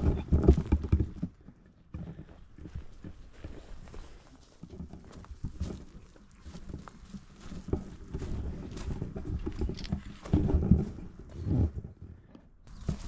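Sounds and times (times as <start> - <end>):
footsteps on ground: 1.9 - 11.8.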